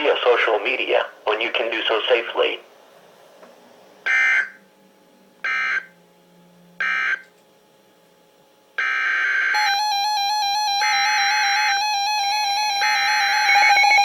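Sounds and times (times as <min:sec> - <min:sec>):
steady electronic tone: 0:08.8 - 0:14.0.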